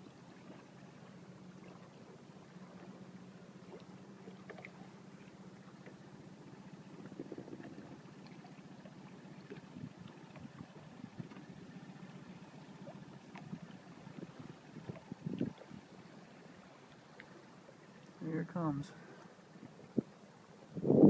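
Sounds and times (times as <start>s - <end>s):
low motor hum: 0.0s - 21.0s
faint ticks: 13.2s - 13.8s, 16.8s - 18.2s.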